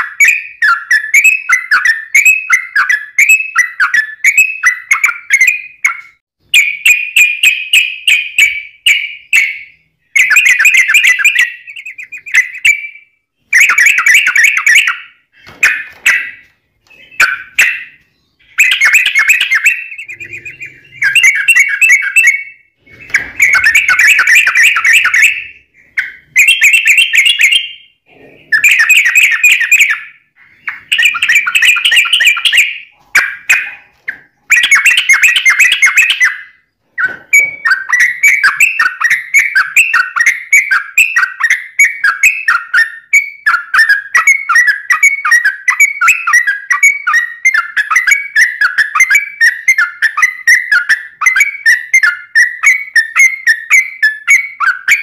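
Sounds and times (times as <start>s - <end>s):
bulbul rolling song: 7.4s - 40.3s.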